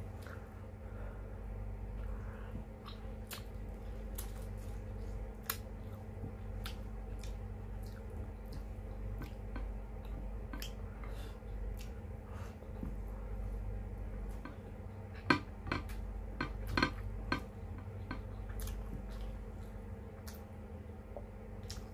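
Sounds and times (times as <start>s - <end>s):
steady low hum: 0.0s - 21.9s
wet chewing and lip smacking: 2.8s - 10.8s, 11.7s - 12.0s, 17.8s - 20.5s, 21.2s - 21.9s.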